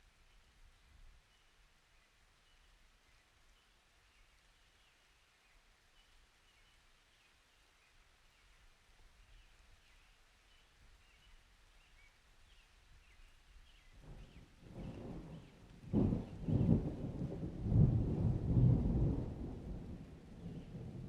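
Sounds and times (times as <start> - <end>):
thunder rumble: 14.0 - 21.0.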